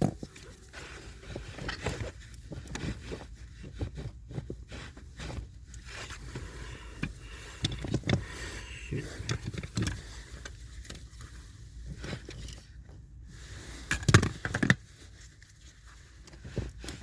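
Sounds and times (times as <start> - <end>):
hand tools clicking and scraping: 0.0 - 12.8
steady low hum: 0.0 - 17.0.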